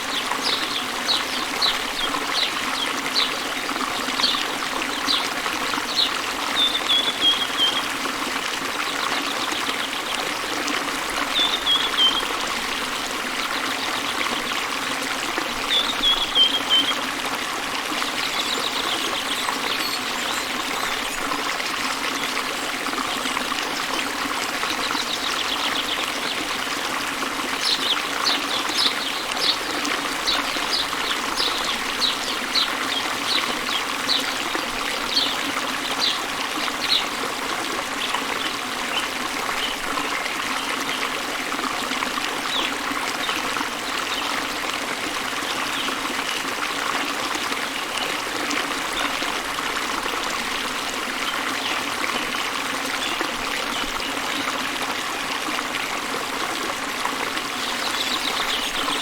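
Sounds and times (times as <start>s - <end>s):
waterfall pouring into river: 0.0s - 59.0s
bird singing: 5.9s - 7.9s, 11.3s - 12.3s.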